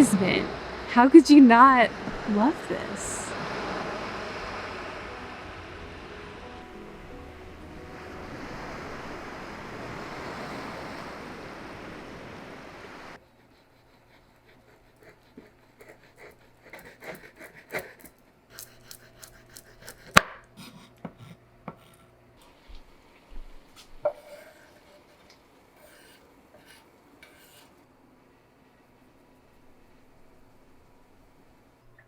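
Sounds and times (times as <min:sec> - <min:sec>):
chopping and scraping: 0:15.3 - 0:22.0.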